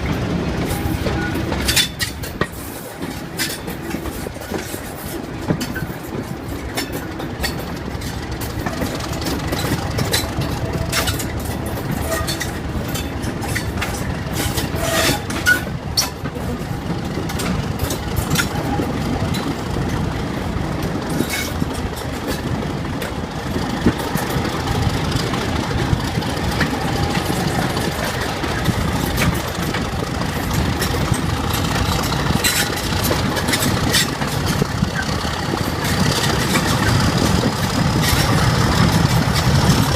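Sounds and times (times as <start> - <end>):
diesel locomotive engine running: 0.0 - 39.9.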